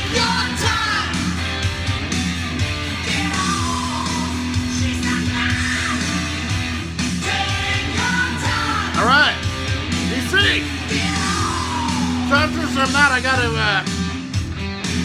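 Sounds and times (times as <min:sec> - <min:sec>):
electric guitars playing: 0:00.0 - 0:15.0
person singing: 0:03.1 - 0:06.3, 0:07.2 - 0:09.4, 0:10.3 - 0:13.2.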